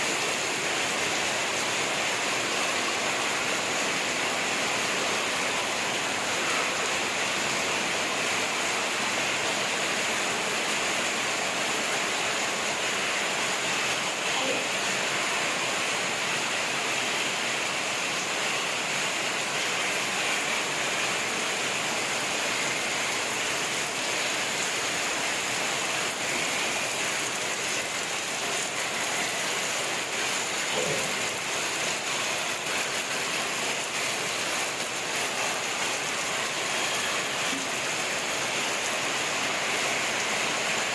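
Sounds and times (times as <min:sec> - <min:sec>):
rain falling steadily: 0:00.0 - 0:40.9.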